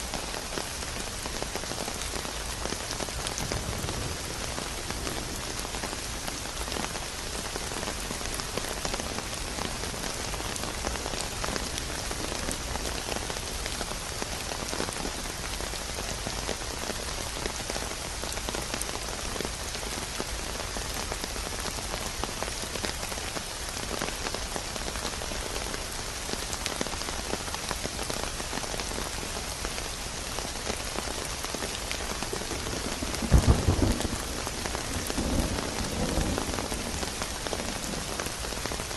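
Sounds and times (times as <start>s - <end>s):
heavy rain falling: 0.0s - 38.9s
thunder rumbling: 32.3s - 38.5s.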